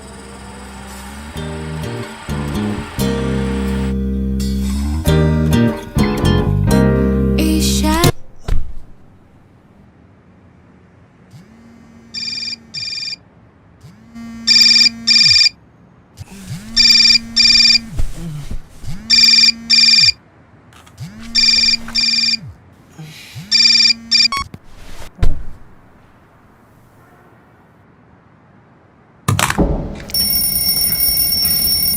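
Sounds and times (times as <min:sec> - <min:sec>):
clicks and knock: 0:29.3 - 0:30.5
alarm double ringing: 0:29.9 - 0:31.9.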